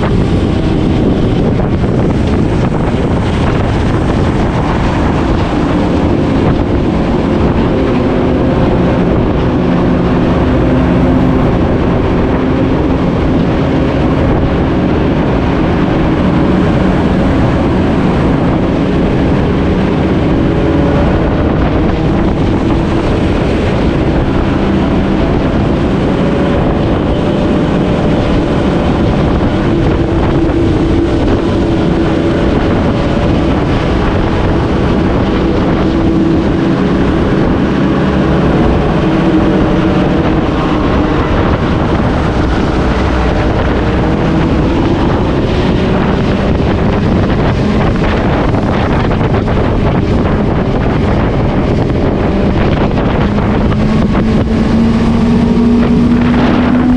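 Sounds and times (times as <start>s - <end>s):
motorcycle engine running: 0.0s - 13.5s, 38.2s - 56.9s
wind rush on microphone: 0.0s - 56.9s.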